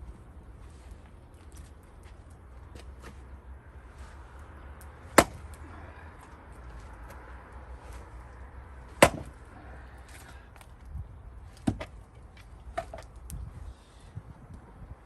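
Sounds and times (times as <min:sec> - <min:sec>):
axe splitting wood: 0:05.0 - 0:05.6, 0:08.9 - 0:09.4, 0:11.6 - 0:12.0.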